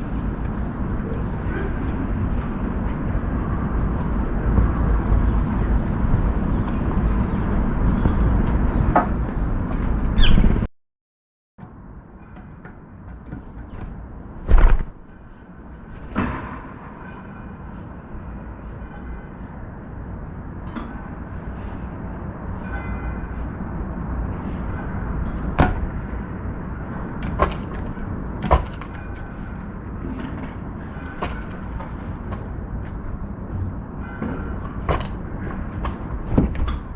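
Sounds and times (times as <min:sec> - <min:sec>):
wind rumble on microphone: 0:00.0 - 0:10.7
small birds chirping: 0:04.7 - 0:09.5, 0:10.1 - 0:10.6.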